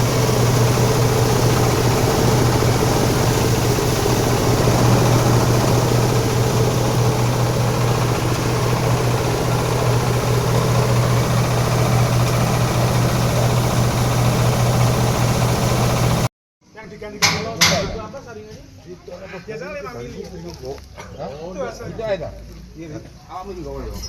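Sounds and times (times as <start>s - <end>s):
grinding machine running: 0.0s - 16.3s.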